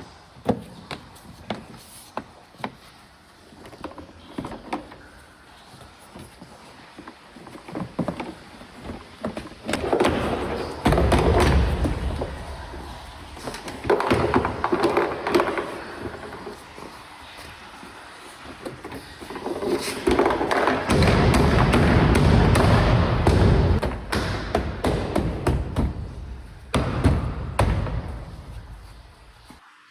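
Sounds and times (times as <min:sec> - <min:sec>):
hands knocking and scraping car door: 0:19.6 - 0:29.3.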